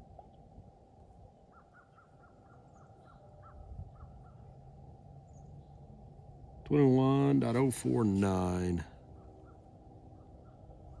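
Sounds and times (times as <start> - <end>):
bird calling: 1.5 - 4.5
shortwave receiver hiss: 6.7 - 8.8.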